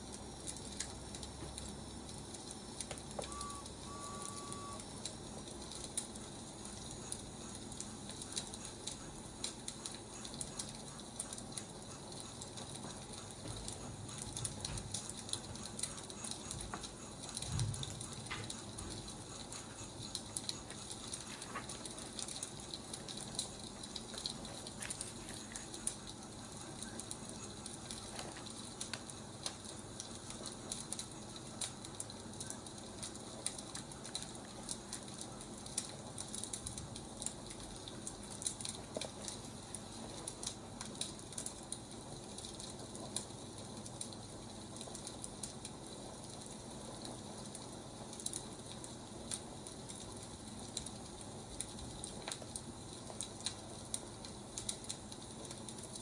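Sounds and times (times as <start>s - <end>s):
wood fire crackling: 0.0s - 56.0s
short beeps: 3.3s - 4.8s.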